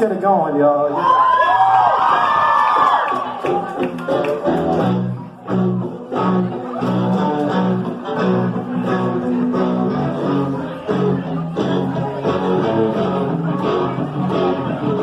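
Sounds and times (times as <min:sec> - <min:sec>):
strummed guitars: 0:03.2 - 0:15.0
repeating bass line: 0:03.7 - 0:15.0.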